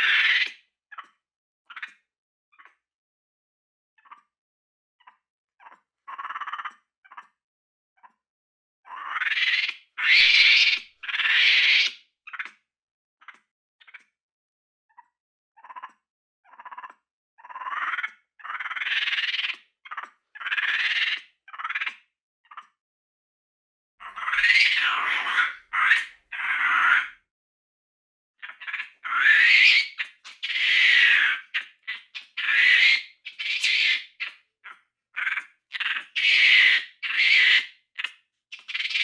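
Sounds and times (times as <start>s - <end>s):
monkey calling: 8.9s - 12.5s, 24.0s - 27.2s, 28.4s - 39.0s.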